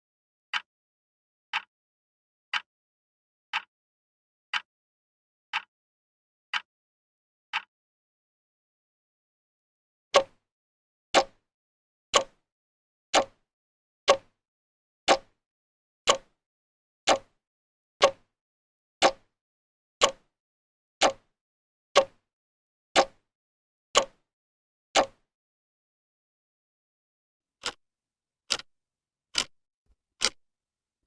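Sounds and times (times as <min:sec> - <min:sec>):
clock ticking: 0:03.5 - 0:03.7, 0:05.5 - 0:05.7, 0:07.5 - 0:07.7, 0:10.2 - 0:10.4, 0:11.2 - 0:11.4, 0:12.2 - 0:12.4, 0:13.2 - 0:13.4, 0:14.1 - 0:14.4, 0:15.1 - 0:15.4, 0:16.1 - 0:16.3, 0:17.1 - 0:17.4, 0:18.0 - 0:18.3, 0:19.0 - 0:19.3, 0:20.0 - 0:20.3, 0:21.0 - 0:21.3, 0:22.0 - 0:22.2, 0:23.0 - 0:23.2, 0:24.0 - 0:24.2, 0:25.0 - 0:25.2, 0:27.6 - 0:27.8, 0:28.5 - 0:28.7, 0:29.3 - 0:29.6, 0:30.2 - 0:30.4.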